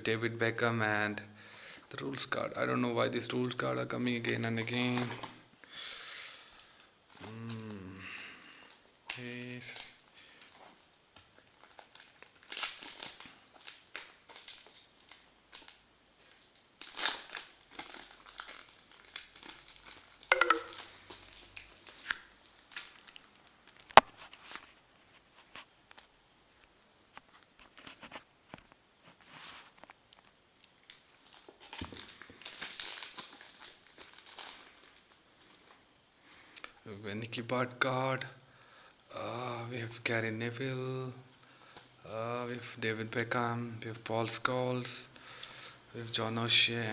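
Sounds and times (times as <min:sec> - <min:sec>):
wrapper tearing and crinkling: 0:04.8 - 0:05.4, 0:06.4 - 0:24.8, 0:29.6 - 0:35.8.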